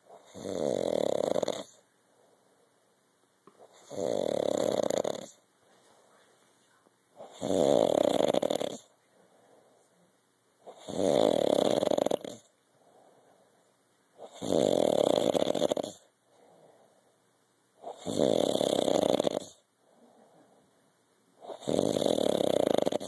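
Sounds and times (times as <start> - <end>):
man snoring: 0.2 - 1.8, 3.7 - 5.4, 7.2 - 8.9, 10.7 - 12.5, 14.2 - 16.1, 17.8 - 19.6, 21.4 - 23.0
faint breaths: 1.6 - 4.0, 5.2 - 11.4, 12.1 - 14.5, 15.9 - 18.1, 19.5 - 22.2.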